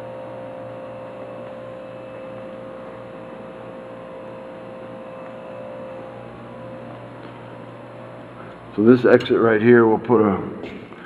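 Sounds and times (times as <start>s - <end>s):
electrical hum: 0.0s - 11.0s.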